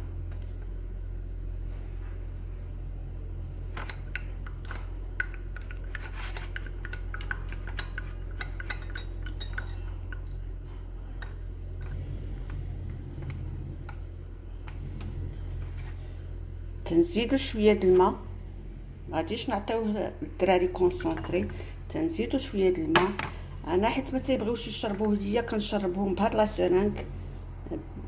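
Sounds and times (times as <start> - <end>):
steady low hum: 0.0 - 28.0
spoon clinking in a glass: 6.8 - 10.4.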